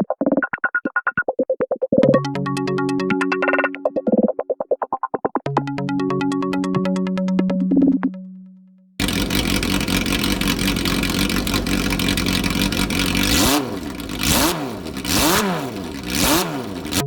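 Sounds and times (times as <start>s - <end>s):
road noise: 9.0s - 17.0s
vehicle engine revving: 9.0s - 17.0s.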